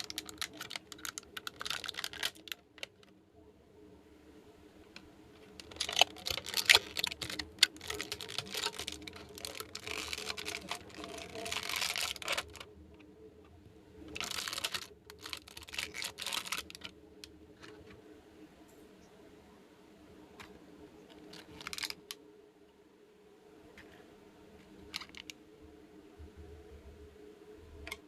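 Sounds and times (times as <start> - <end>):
plastic toy pieces clicking: 0.0 - 2.9, 5.6 - 12.6, 14.2 - 16.9, 24.9 - 25.3.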